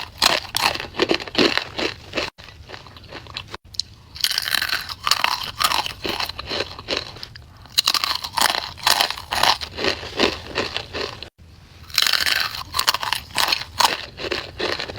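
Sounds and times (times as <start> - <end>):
crunchy snacks being chewed: 0.0 - 14.9.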